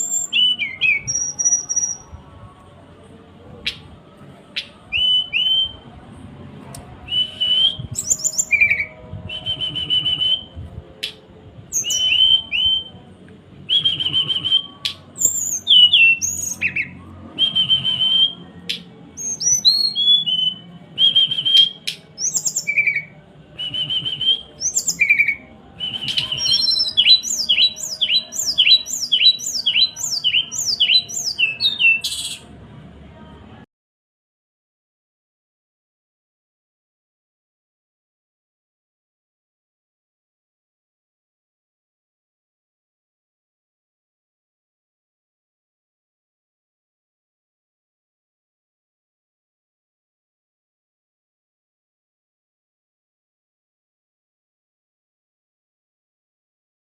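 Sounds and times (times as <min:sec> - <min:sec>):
songbird whistles and chirps: 0:00.0 - 0:02.3, 0:03.6 - 0:05.9, 0:06.7 - 0:13.0, 0:13.6 - 0:32.5.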